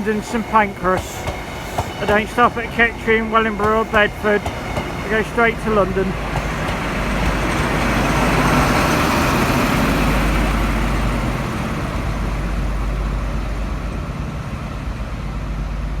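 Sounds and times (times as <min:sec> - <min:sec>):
diesel locomotive engine running: 0:00.0 - 0:16.0.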